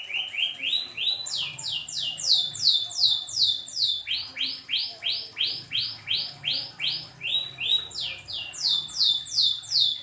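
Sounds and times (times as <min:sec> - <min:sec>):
canary singing: 0:00.0 - 0:10.0.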